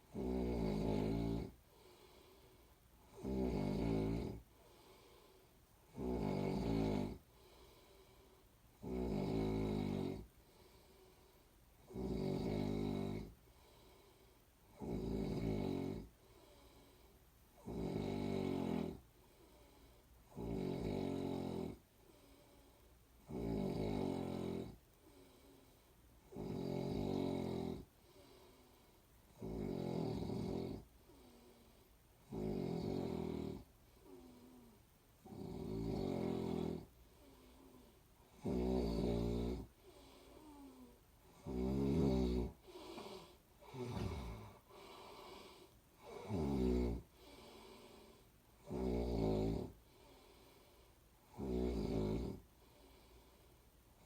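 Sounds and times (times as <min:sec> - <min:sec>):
person snoring: 0:00.0 - 0:02.4, 0:03.0 - 0:11.2, 0:11.8 - 0:14.1, 0:14.7 - 0:17.0, 0:17.6 - 0:22.6, 0:23.2 - 0:25.6, 0:26.2 - 0:53.3
quiet breathing: 0:00.0 - 0:54.0.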